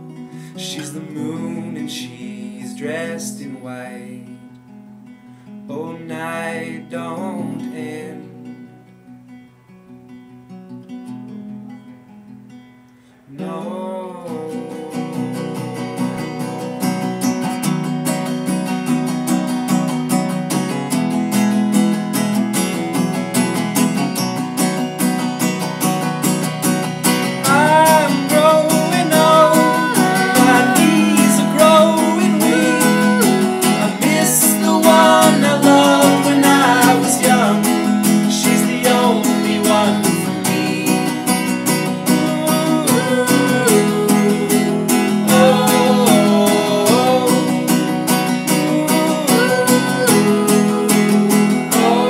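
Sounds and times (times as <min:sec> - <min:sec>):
acoustic guitar strumming: 0:00.0 - 0:52.0
sliding wavering melody line: 0:27.0 - 0:40.9.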